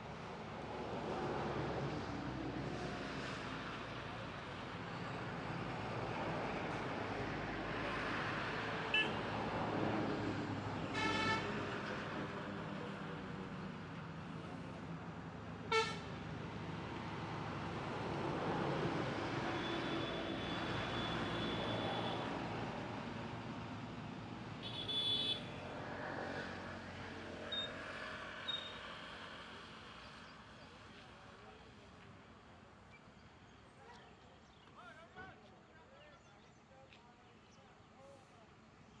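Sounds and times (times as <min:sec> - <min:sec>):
road traffic: 0:00.0 - 0:39.0
vehicle horn toots: 0:15.7 - 0:16.0, 0:24.6 - 0:25.4.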